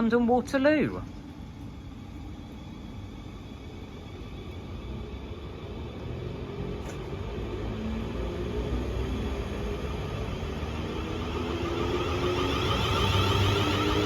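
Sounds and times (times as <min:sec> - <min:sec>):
train low rumble: 0:00.0 - 0:14.0
rising motor whine: 0:03.6 - 0:14.0.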